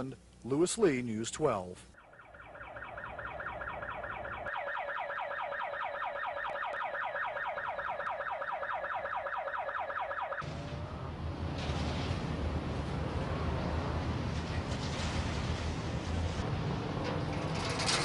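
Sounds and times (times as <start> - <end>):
electronic warbling alarm tone: 2.0 - 10.4.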